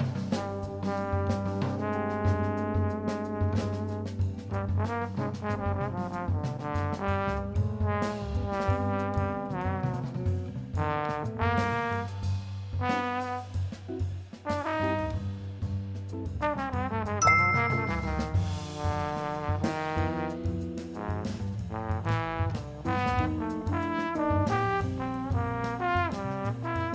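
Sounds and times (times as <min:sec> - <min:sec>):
solo wind instrument melody: 0:17.2 - 0:18.4
low musical accompaniment: 0:17.2 - 0:18.6.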